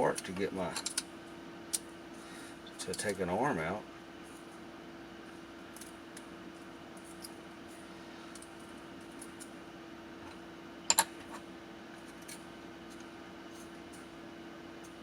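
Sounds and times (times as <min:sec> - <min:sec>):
steady low hum: 0:00.0 - 0:15.0
small parts clicking and tapping: 0:00.1 - 0:01.0.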